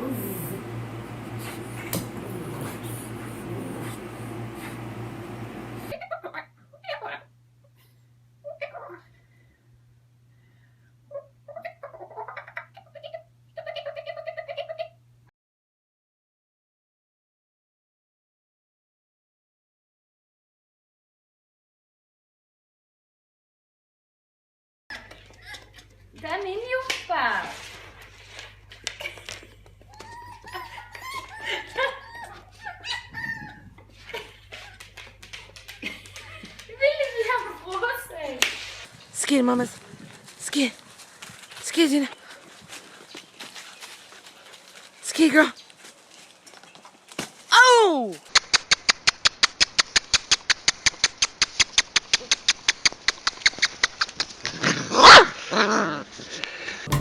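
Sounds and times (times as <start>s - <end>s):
dog whimpering: 0.0s - 0.8s, 1.4s - 4.9s, 29.9s - 33.8s
rapid even clicking: 48.3s - 54.4s
dog barking: 55.0s - 55.3s.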